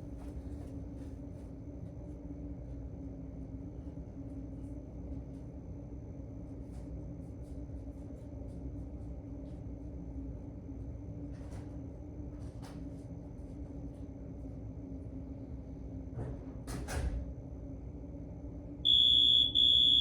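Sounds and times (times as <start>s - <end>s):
low room hum: 0.0s - 20.0s.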